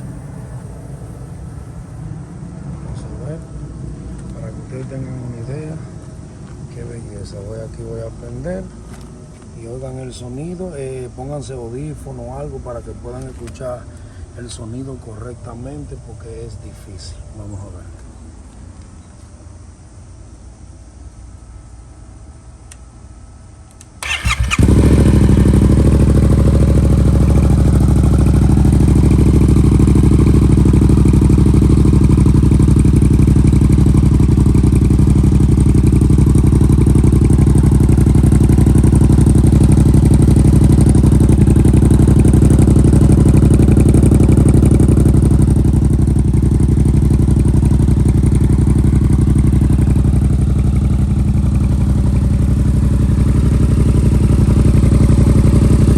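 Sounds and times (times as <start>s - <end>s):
motorcycle engine starting and idling: 0.0s - 2.0s, 23.7s - 55.9s.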